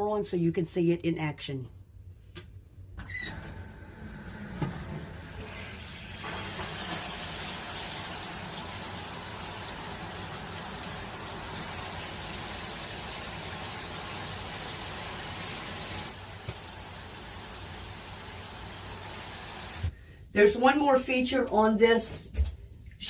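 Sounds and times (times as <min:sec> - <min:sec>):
shower spray hissing: 0:06.0 - 0:19.9.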